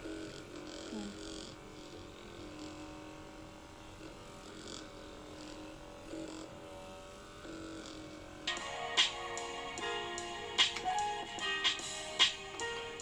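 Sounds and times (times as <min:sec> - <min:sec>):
massage gun buzzing: 0:00.0 - 0:13.0
music: 0:08.4 - 0:13.0.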